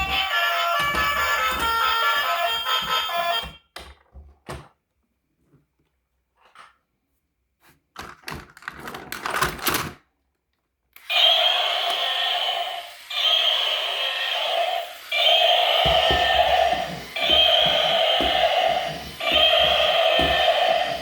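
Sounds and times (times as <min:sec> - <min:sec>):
steady tone: 0:13.1 - 0:21.0.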